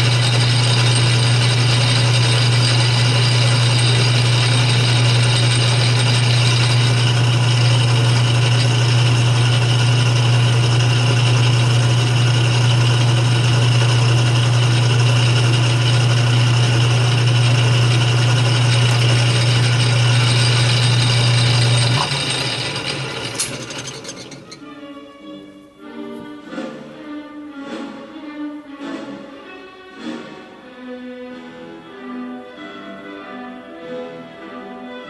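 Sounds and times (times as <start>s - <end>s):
lathe humming and rattling: 0.0s - 24.8s
lathe winding down: 0.0s - 24.8s.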